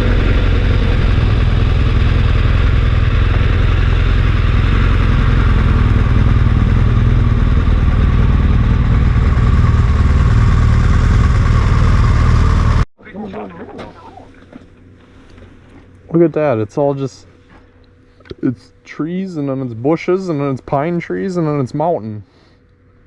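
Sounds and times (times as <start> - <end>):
engine and tyres rumbling on road: 0.0 - 12.9.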